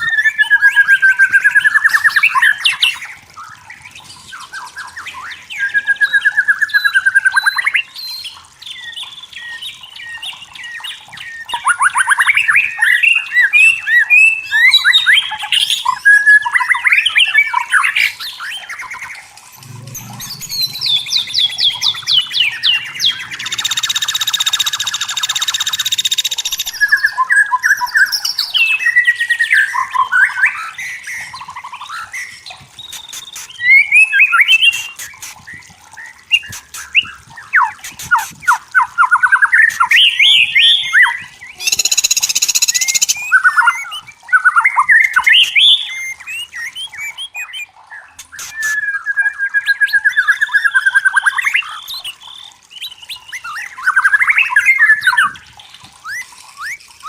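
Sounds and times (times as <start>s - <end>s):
bird singing whistled song: 0.0s - 3.0s, 19.5s - 35.3s, 36.0s - 47.7s.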